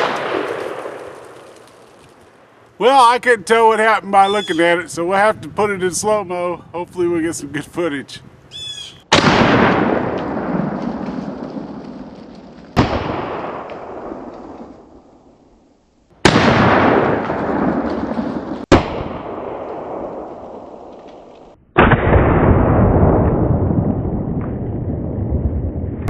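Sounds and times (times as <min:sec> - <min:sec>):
slowed shotgun blast booms: 0:00.0 - 0:02.6, 0:09.1 - 0:15.4, 0:16.2 - 0:26.0.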